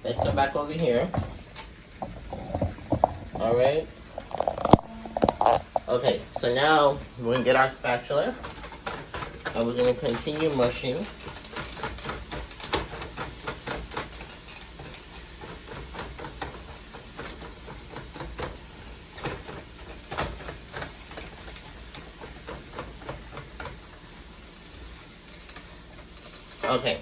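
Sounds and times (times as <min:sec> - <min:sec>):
spatula scraping against a pot: 0:02.1 - 0:15.2.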